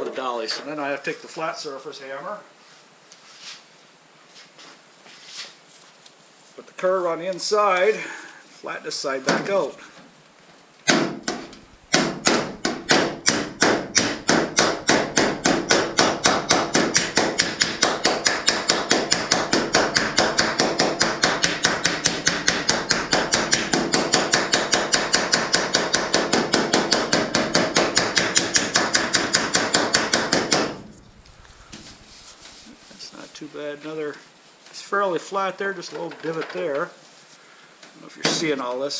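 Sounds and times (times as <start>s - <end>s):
hammer striking aluminum hull: 10.9s - 30.9s.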